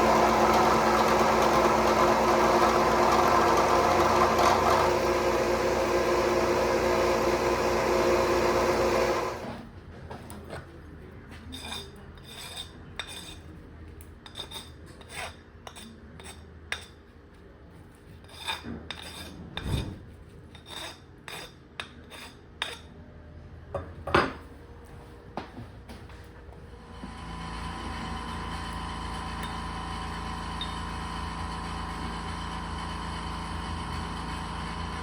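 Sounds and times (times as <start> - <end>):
milling machine running: 0.0 - 9.6, 26.9 - 35.0.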